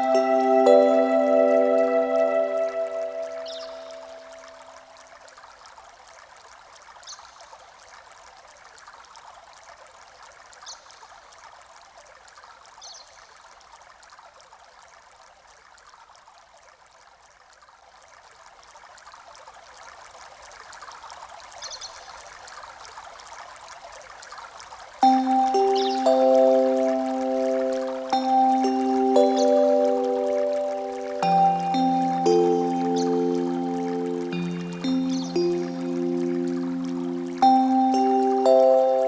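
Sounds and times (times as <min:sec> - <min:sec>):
music with long held notes: 0:00.0 - 0:04.7, 0:25.0 - 0:39.0
trickling stream: 0:00.0 - 0:39.0.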